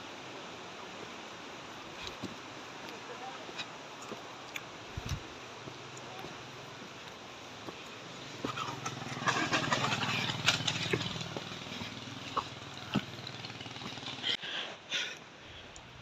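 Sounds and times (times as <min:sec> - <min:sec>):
vehicle engine passing by: 0:08.5 - 0:14.4.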